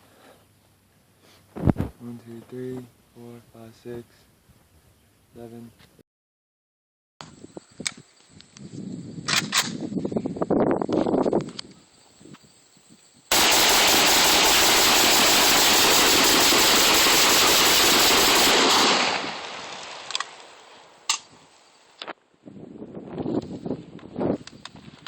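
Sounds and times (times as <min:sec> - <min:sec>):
sharp cracks or clicks: 0:09.3 - 0:09.8, 0:13.3 - 0:21.3
rapid rifle gunfire: 0:13.3 - 0:20.4.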